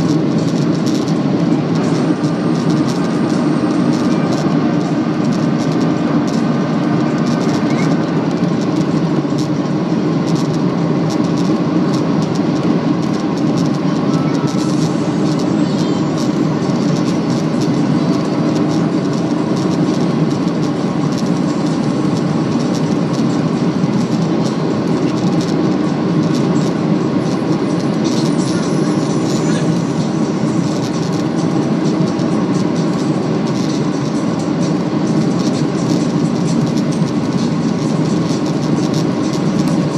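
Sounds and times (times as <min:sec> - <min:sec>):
jet engines and airflow rush: 0:00.0 - 0:39.9.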